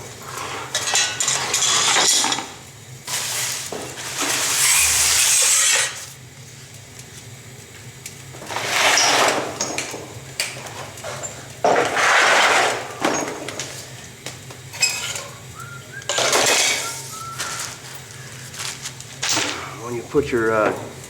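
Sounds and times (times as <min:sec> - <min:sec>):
tools clinking and scraping: 0:14.8 - 0:15.3, 0:16.1 - 0:19.8.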